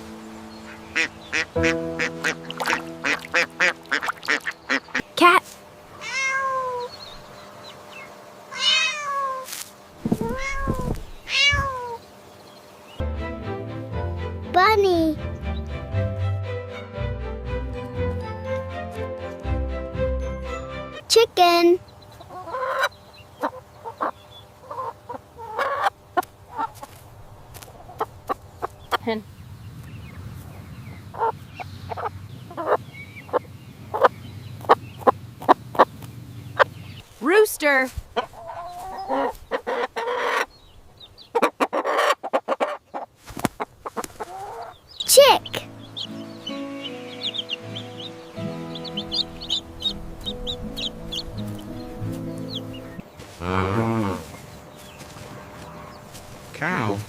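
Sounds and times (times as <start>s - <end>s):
hen clucking: 0.6s - 5.1s, 21.9s - 27.0s, 27.7s - 29.2s, 30.9s - 37.0s, 38.0s - 57.0s
cat meowing: 6.0s - 6.9s, 8.5s - 9.5s, 10.2s - 12.0s
steady low hum: 43.6s - 57.0s.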